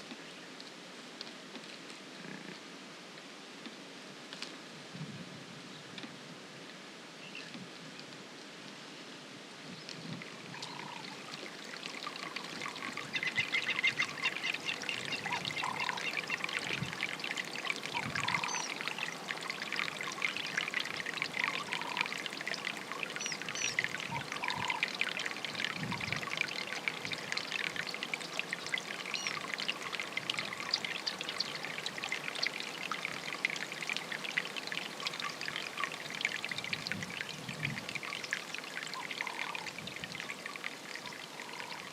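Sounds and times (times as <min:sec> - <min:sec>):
water trickling: 0:09.6 - 0:41.9.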